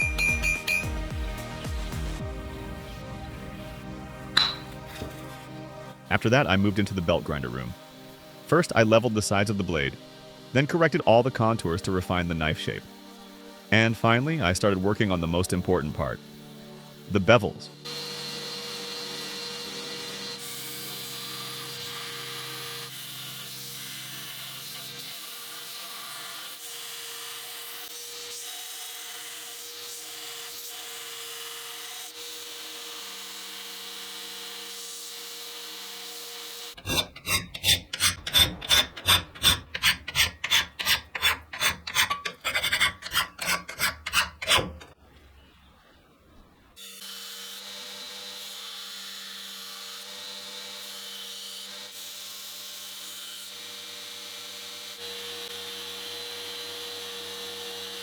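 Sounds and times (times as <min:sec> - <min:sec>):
metal scraping on grinder: 0:04.4 - 0:12.8, 0:36.5 - 0:45.0
belt grinder humming: 0:35.8 - 0:45.0.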